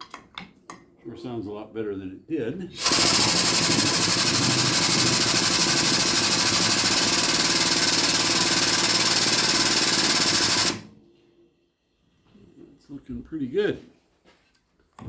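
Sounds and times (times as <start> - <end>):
air pump motor cycling: 2.8 - 10.9.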